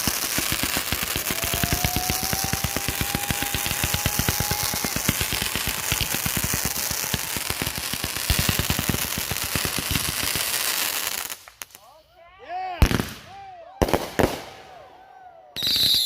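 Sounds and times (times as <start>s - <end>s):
firework whistle: 0.0s - 8.4s, 15.6s - 16.0s
fireworks cracks and bangs: 0.0s - 11.8s, 12.8s - 14.8s, 15.6s - 16.0s.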